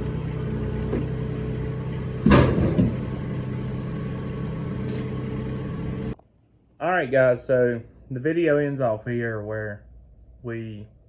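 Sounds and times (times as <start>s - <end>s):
diesel engine running: 0.0s - 6.2s
loud clunk: 2.0s - 6.2s.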